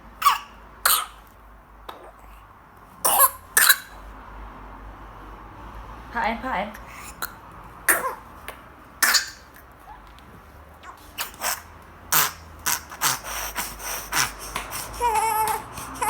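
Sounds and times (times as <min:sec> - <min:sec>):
baby coughing harshly: 0:00.2 - 0:01.2, 0:03.0 - 0:04.0, 0:07.0 - 0:08.3, 0:09.0 - 0:09.5, 0:11.2 - 0:16.0
baby crying: 0:12.2 - 0:16.0.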